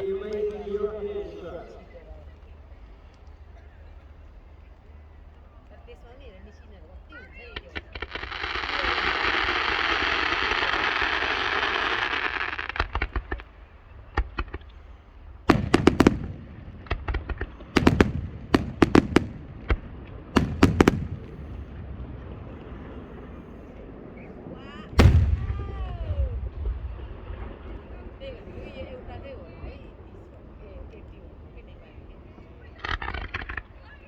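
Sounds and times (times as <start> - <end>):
fireworks bangs and crackles: 7.0 - 34.0.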